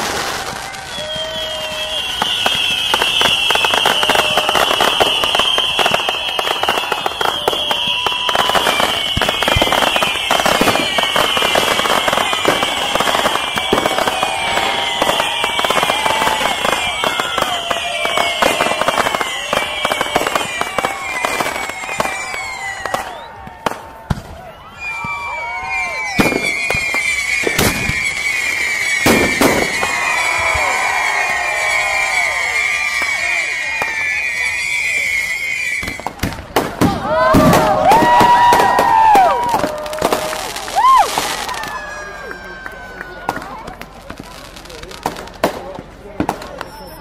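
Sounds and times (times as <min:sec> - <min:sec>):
firecrackers crackling: 0:00.0 - 0:47.0
whistling fireworks: 0:00.0 - 0:47.0.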